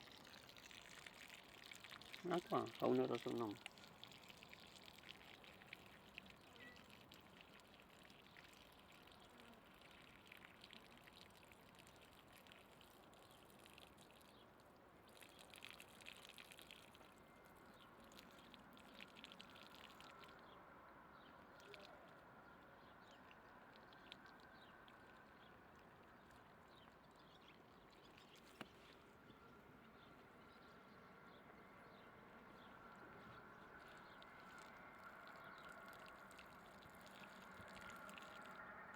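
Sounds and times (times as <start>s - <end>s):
faint trickle of running water: 0.0s - 38.9s
water drips and splashes: 0.0s - 38.9s.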